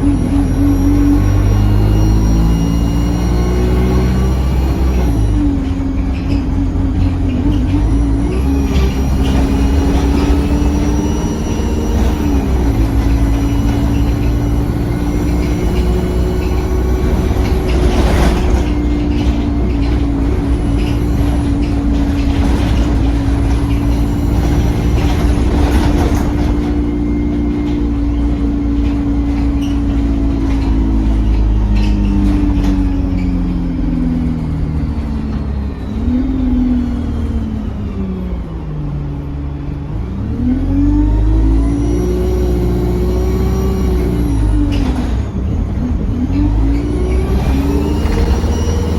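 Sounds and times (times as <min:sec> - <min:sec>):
bus engine and driveline whine: 0:00.0 - 0:48.9
short knocks and rattles: 0:05.2 - 0:33.4.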